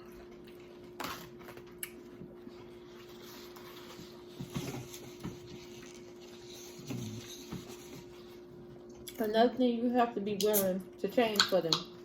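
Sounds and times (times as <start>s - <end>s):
food being chewed: 0.0s - 9.4s
steady low hum: 0.0s - 12.0s.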